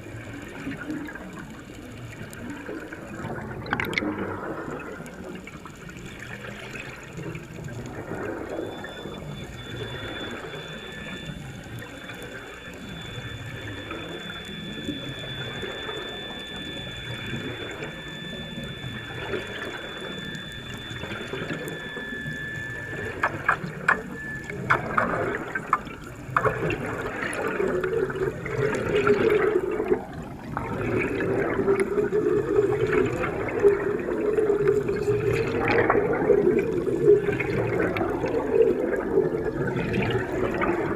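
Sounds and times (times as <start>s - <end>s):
rushing bubbling water: 0.0s - 40.9s
faint steady high tone: 4.7s - 40.9s
clicks: 5.0s - 28.0s.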